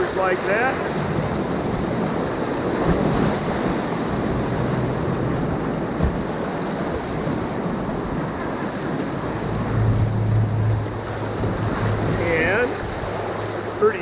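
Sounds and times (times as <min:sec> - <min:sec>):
whitewater rapids rushing: 0:00.0 - 0:14.0
low thump: 0:06.0 - 0:06.3.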